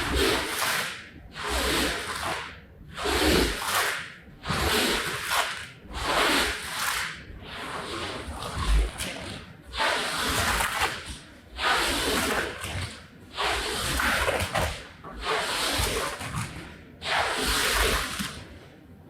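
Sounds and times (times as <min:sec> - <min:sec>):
cleaning tool rubbing rug: 0:00.0 - 0:18.6.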